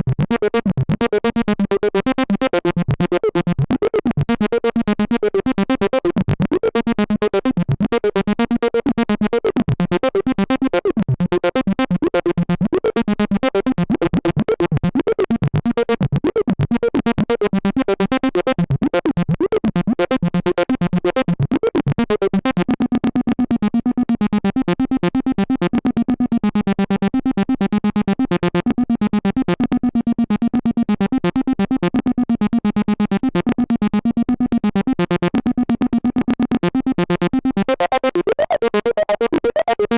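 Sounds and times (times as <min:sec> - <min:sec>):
synthesizer acid bass line: 0:28.3 - 0:39.9.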